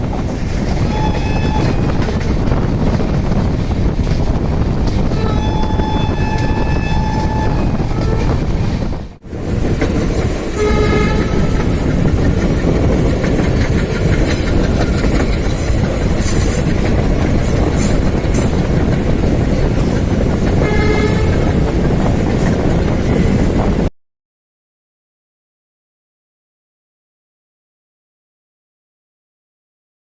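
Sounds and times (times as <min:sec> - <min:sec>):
train wheels rumbling on rails: 0:00.0 - 0:23.9
locomotive horn blast: 0:00.9 - 0:02.0, 0:05.1 - 0:08.5, 0:10.6 - 0:11.8, 0:20.6 - 0:21.5
wheels clattering over joints: 0:11.3 - 0:20.6.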